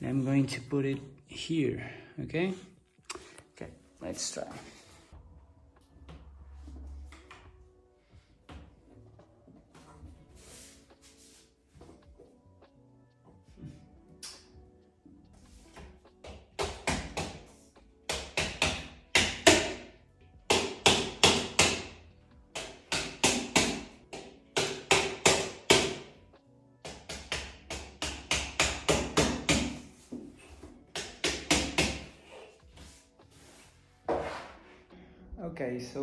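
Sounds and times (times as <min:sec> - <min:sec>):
sharp knocks on wooden dowels: 0:16.2 - 0:17.5, 0:18.1 - 0:19.9, 0:20.5 - 0:26.1, 0:26.8 - 0:29.9, 0:30.9 - 0:32.2.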